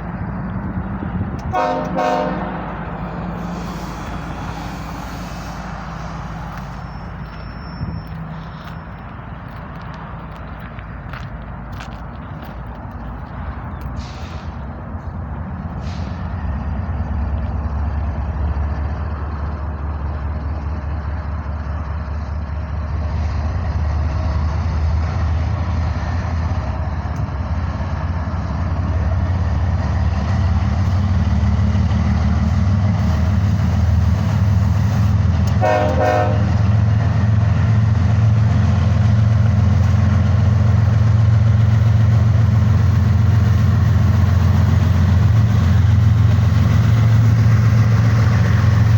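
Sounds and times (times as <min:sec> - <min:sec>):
diesel locomotives droning: 0:00.0 - 0:48.9
locomotive air horn toot: 0:01.4 - 0:02.8, 0:33.0 - 0:36.7.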